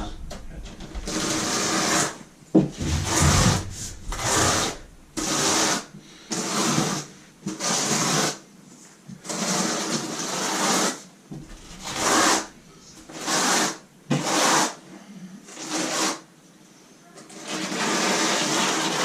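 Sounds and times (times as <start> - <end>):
trowel scraping mortar: 1.0 - 2.2, 2.8 - 8.4, 9.2 - 14.8.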